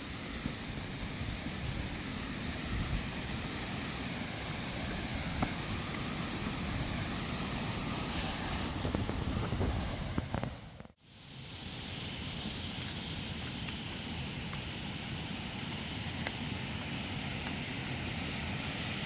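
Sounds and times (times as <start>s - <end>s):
wind buffeting microphone: 0.0s - 3.7s
creek and waterfall rushing: 0.0s - 8.8s, 11.2s - 19.0s.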